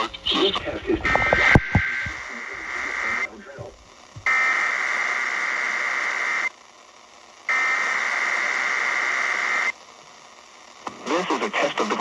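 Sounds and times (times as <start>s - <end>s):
buzzy digital data bursts: 0.0s - 6.6s, 7.4s - 9.8s.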